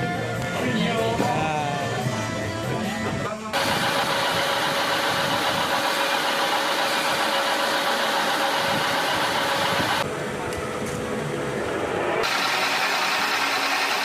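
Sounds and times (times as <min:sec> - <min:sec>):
machine humming and hissing: 0:03.5 - 0:14.0.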